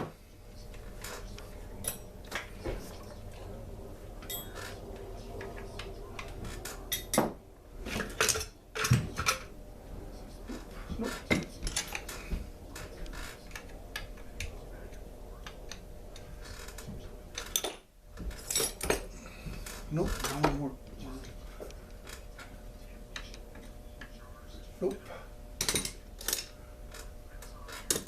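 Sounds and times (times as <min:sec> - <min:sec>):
metal tools clinking and clattering: 0:01.8 - 0:02.5, 0:04.2 - 0:04.8, 0:06.5 - 0:07.3, 0:07.9 - 0:09.5, 0:11.1 - 0:12.2, 0:17.4 - 0:19.1, 0:25.6 - 0:26.5.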